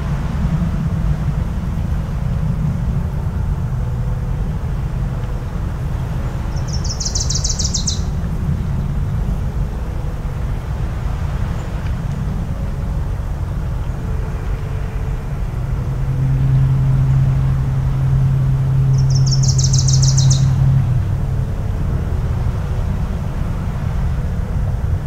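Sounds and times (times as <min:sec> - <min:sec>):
distant foghorn blast: 0:08.1 - 0:25.0.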